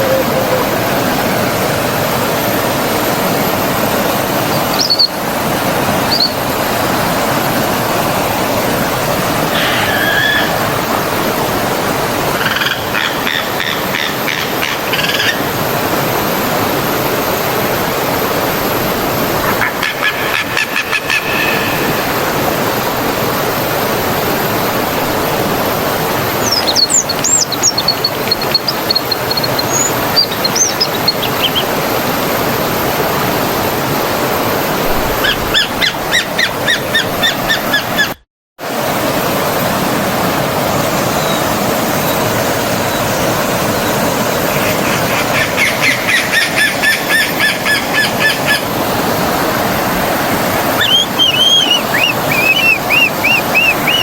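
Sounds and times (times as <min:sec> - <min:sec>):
stream water flowing: 0:00.0 - 0:37.8, 0:38.6 - 0:54.0
small birds chirping: 0:26.3 - 0:31.8, 0:50.8 - 0:54.0.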